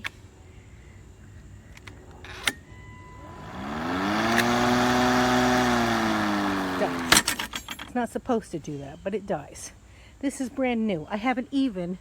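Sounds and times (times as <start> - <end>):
lawn mower motor whining and humming: 2.2 - 8.0.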